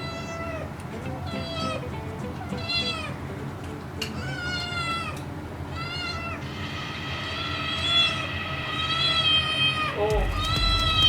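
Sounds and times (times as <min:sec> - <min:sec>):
kitten meowing: 0:00.0 - 0:01.8, 0:02.4 - 0:03.2, 0:04.2 - 0:11.0.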